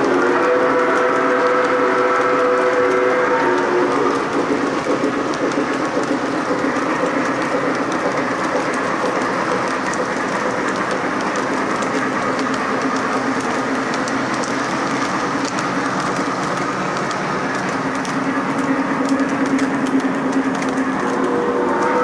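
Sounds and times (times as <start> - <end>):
clicks over rail joints: 0.0 - 22.0
model train wheels rumbling on track: 0.0 - 22.0.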